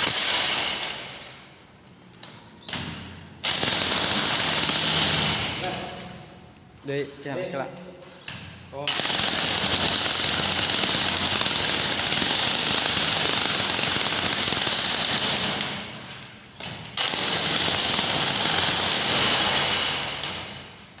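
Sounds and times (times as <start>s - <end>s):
jackhammer hammering: 0.0s - 1.4s, 2.8s - 6.0s, 8.9s - 20.9s.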